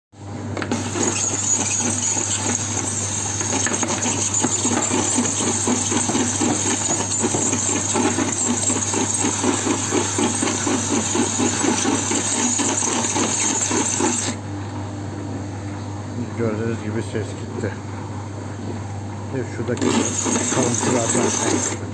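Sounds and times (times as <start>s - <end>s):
tumble dryer running: 0.3s - 14.5s, 19.4s - 21.9s.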